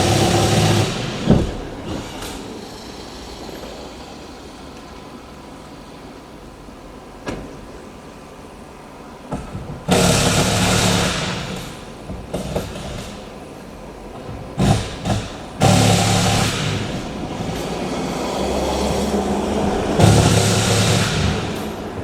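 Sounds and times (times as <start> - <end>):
low background noise: 0.0 - 22.0
car engine running: 15.6 - 22.0.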